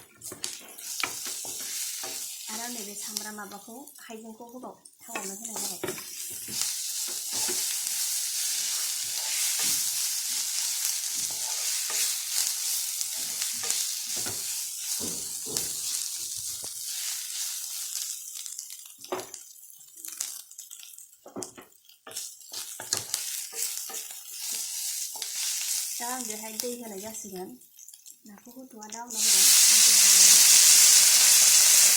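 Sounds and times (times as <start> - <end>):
fish frying in oil: 0.0 - 4.6, 5.2 - 31.9
spoon scraping a pan: 5.2 - 17.9, 22.1 - 26.0.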